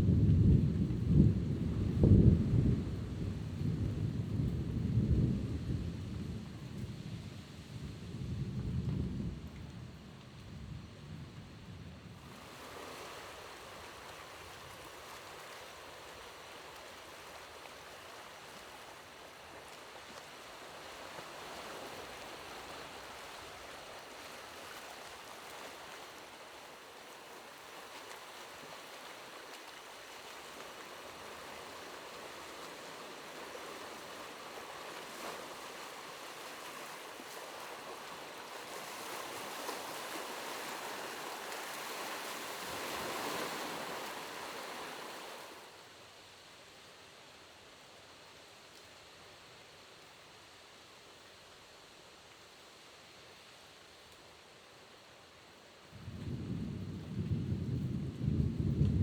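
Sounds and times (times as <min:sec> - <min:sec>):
water rushing: 0:12.3 - 0:45.9.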